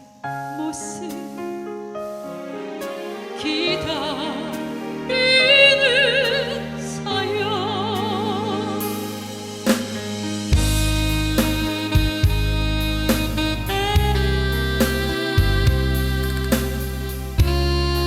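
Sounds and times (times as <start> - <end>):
person singing with vibrato: 0.0 - 1.6, 3.3 - 9.4
instrumental accompaniment: 0.0 - 18.0.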